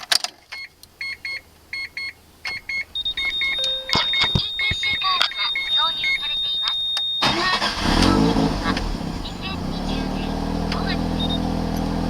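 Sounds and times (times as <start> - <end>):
short electronic beeps: 0.6 - 9.6, 11.0 - 11.5
rotary engine cranking on starter: 7.2 - 12.0.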